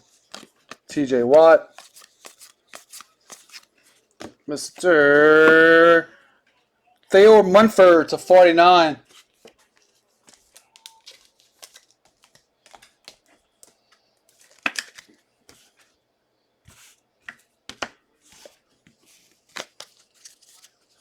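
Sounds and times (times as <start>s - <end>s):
trading cards rustling: 0.0s - 6.0s, 8.2s - 16.0s, 16.7s - 21.0s.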